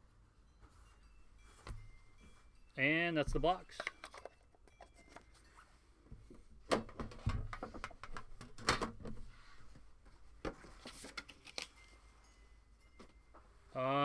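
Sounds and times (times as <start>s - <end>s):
card packaging rustling: 10.6s - 11.9s.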